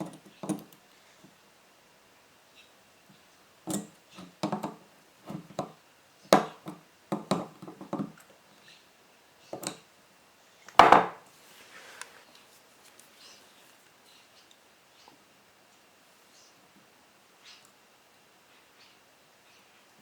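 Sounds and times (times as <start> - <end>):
tools clicking and knocking on workbench: 0.0 - 0.8, 3.7 - 8.2, 10.7 - 11.2.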